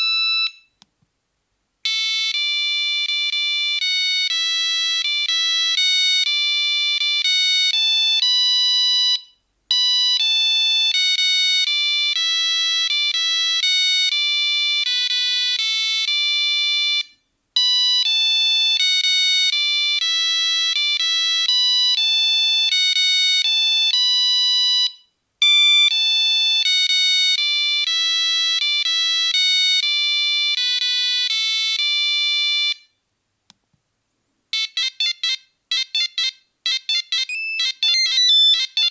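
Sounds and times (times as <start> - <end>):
monophonic phone ringtone: 34.6 - 38.9.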